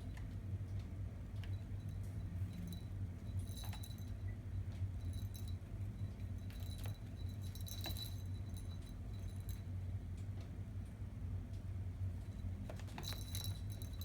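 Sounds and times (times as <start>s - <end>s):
steady low hum: 0.0s - 14.0s
clinks and jingling rattles: 1.4s - 9.7s, 12.2s - 14.0s.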